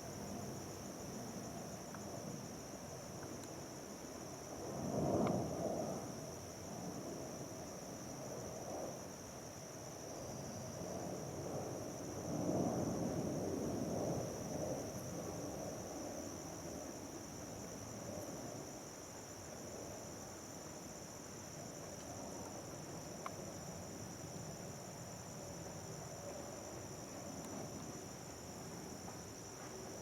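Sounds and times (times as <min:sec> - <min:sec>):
crickets trilling: 0:00.0 - 0:30.0.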